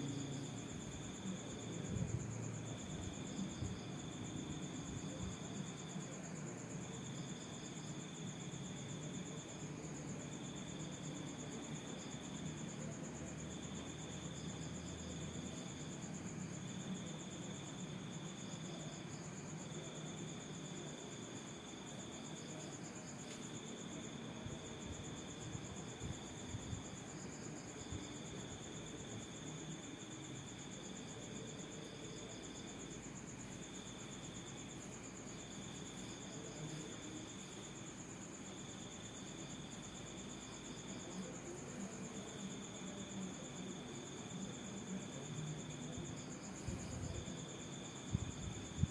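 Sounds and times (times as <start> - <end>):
faint low background noise: 0.0 - 48.9
high insect trill: 0.0 - 48.9
lower insect trill: 0.0 - 48.9.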